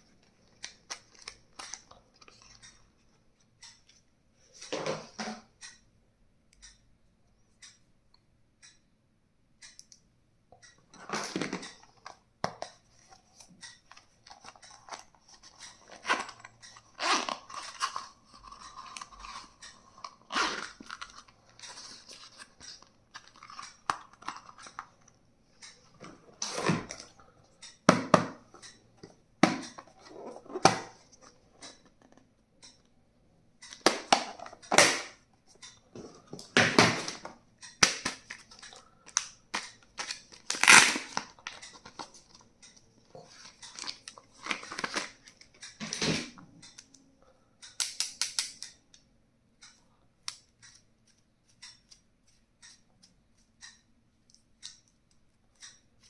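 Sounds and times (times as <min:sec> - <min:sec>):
packaging crinkling and tearing: 0:40.0 - 0:42.0.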